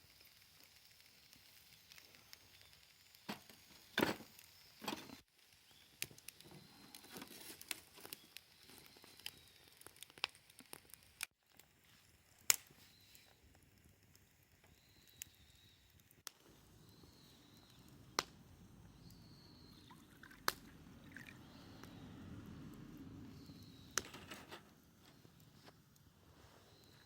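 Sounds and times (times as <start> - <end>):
campfire wood crackling: 0.0 - 27.0
sharp pops: 16.0 - 22.0.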